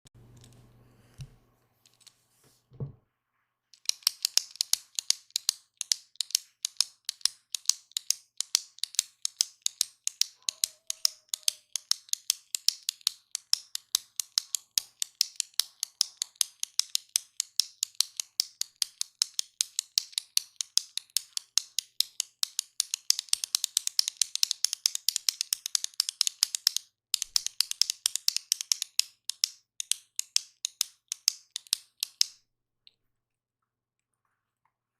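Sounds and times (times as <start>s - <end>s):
soft thump: 2.7s - 3.0s
click pen clicking rapidly: 3.8s - 32.4s.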